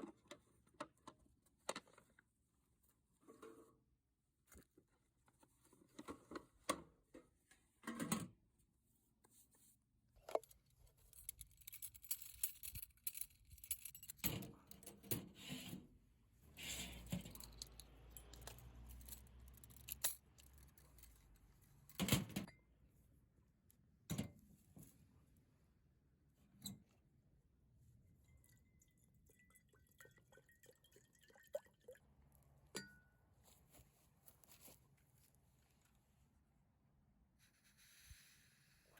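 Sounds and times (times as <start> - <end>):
camping gear clicking and clinking: 10.2 - 15.1, 16.9 - 22.5.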